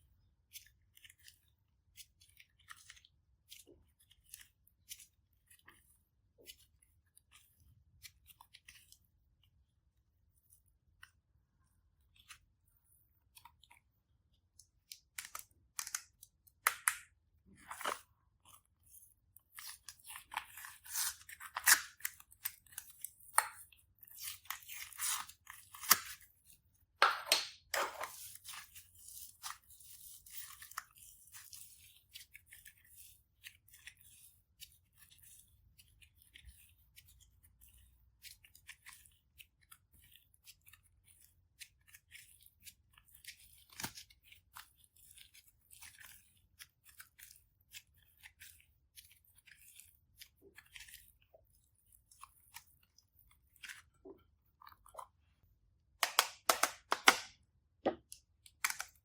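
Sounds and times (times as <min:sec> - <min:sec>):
hands squishing slime: 0:11.8 - 0:59.0.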